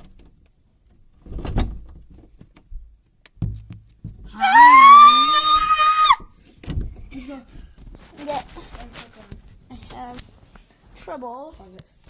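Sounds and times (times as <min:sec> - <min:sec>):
dull thumps of door: 0:01.2 - 0:04.4, 0:06.1 - 0:07.2
child screaming: 0:04.4 - 0:06.2.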